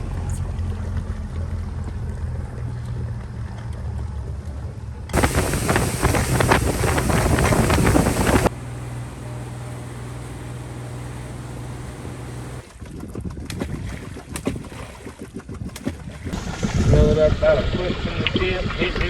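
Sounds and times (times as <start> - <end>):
wind on microphone: 5.2 - 8.6
boat motor humming: 5.2 - 12.9.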